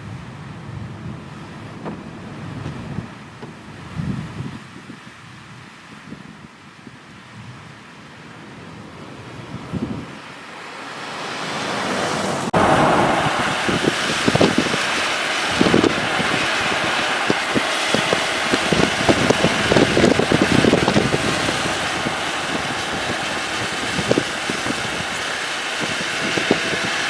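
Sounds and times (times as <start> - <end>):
wind buffeting microphone: 0.0 - 27.0
strong wind rushing: 8.5 - 27.0.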